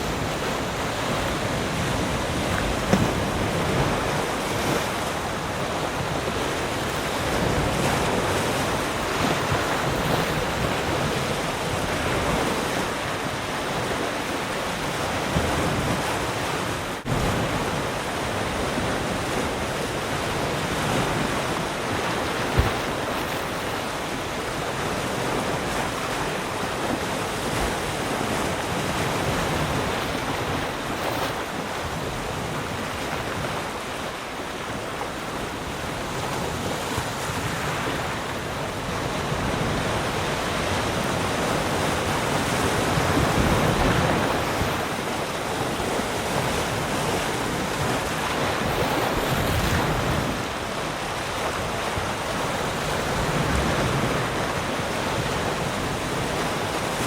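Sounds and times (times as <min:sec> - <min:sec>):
ocean waves breaking: 0:00.0 - 0:57.0.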